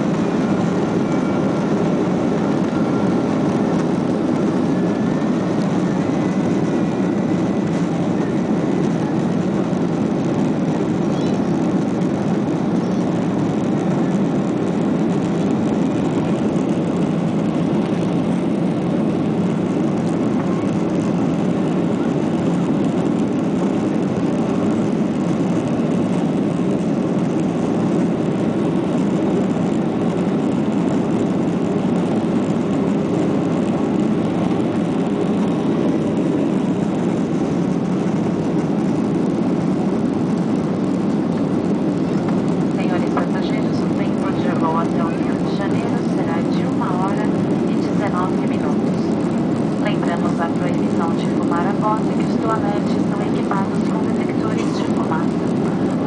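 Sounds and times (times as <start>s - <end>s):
faint high whine: 0.0s - 10.1s
jet engine drone in cabin: 0.0s - 56.0s.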